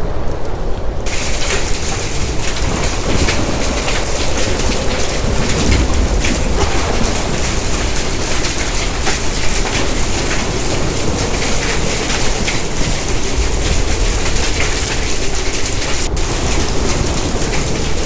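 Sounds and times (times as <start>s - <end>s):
heavy rain hissing: 0.9s - 18.0s
hailstones striking: 1.0s - 18.0s
deep low rumble: 1.1s - 15.2s.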